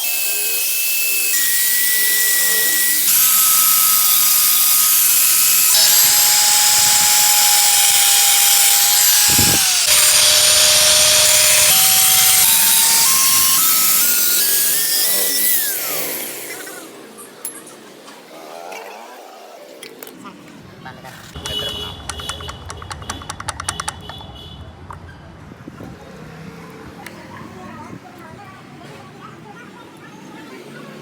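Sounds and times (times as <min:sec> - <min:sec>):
power tool whining: 0:00.0 - 0:17.0.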